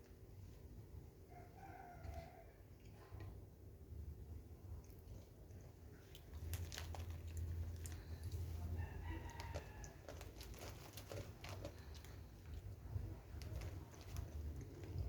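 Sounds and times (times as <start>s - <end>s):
rooster crowing: 1.3s - 2.6s, 8.7s - 10.2s.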